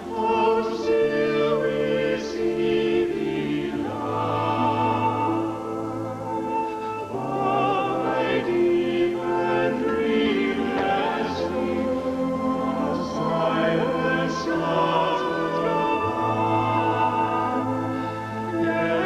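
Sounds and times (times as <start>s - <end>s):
operatic singing: 0.0s - 19.0s
orchestra playing: 0.0s - 19.0s.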